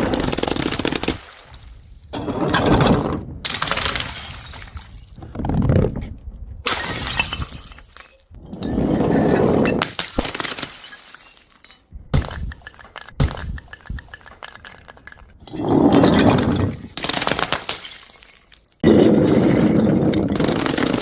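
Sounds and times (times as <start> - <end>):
glass bottles smashing: 3.6 - 5.2, 6.7 - 12.3, 14.2 - 21.0
glass shards clinking: 10.8 - 11.9.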